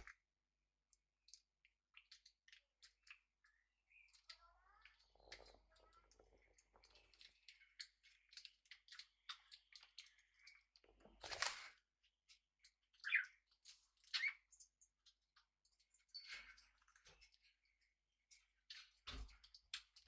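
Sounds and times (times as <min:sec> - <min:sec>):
parrot beak clicks and pecking: 0:00.9 - 0:15.2
parrot chirps: 0:13.0 - 0:13.4.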